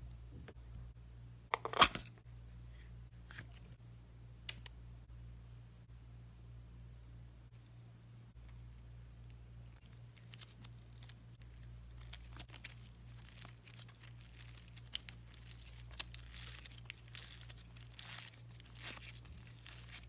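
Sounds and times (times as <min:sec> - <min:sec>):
steady low hum: 0:00.0 - 0:20.0
paper crackling and tearing: 0:10.2 - 0:20.0.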